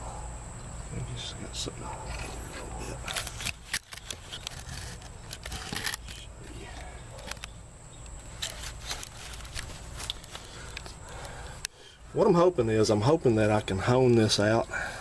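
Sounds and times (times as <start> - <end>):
steady low hum: 0.0 - 15.0
tools scraping and clicking on metal: 2.0 - 7.5.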